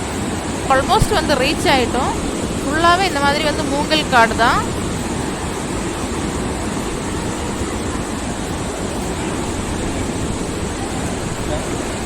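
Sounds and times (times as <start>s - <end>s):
waterfall roaring: 0.0s - 12.0s.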